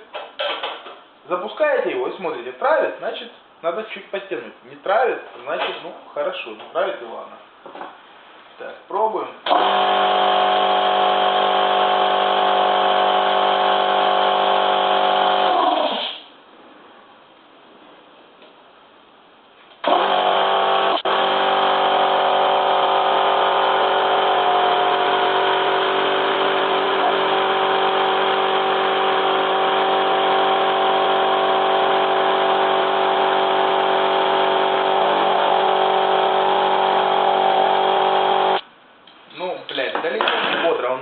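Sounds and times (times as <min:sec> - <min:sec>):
air compressor running: 0:09.4 - 0:16.3, 0:19.8 - 0:38.6.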